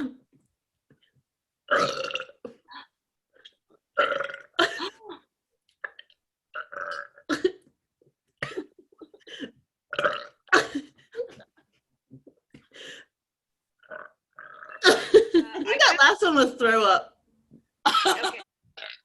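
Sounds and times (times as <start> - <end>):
woman burping: 1.7 - 3.0, 4.0 - 7.6, 9.9 - 10.8, 13.8 - 15.6, 17.9 - 19.0.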